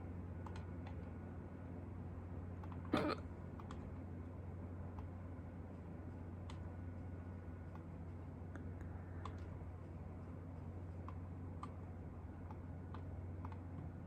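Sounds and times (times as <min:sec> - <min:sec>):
steady low hum: 0:00.0 - 0:14.0
faint small clicks: 0:00.4 - 0:01.1, 0:03.6 - 0:03.9, 0:12.4 - 0:13.9.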